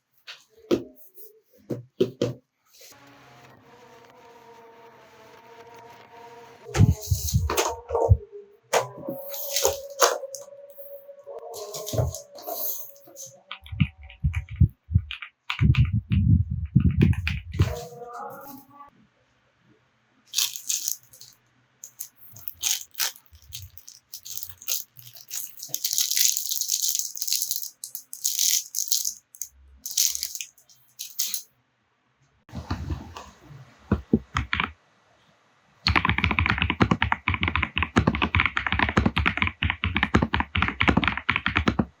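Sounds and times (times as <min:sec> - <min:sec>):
mechanical keyboard typing: 0:11.6 - 0:17.9, 0:34.0 - 0:34.7, 0:35.9 - 0:42.0.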